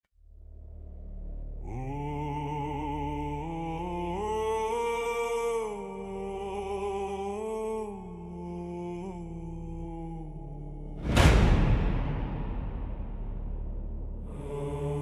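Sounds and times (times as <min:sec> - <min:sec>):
low steady drone: 0:00.2 - 0:15.0
wordless vocal with vibrato: 0:01.5 - 0:15.0.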